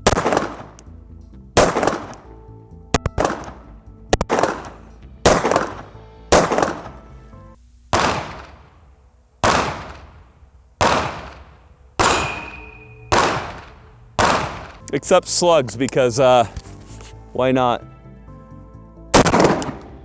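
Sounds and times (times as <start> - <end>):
pistol shots echoing: 0.0 - 0.8, 1.6 - 2.4, 3.0 - 7.2, 7.9 - 15.2, 19.2 - 20.0
rounds striking wood: 10.8 - 15.0.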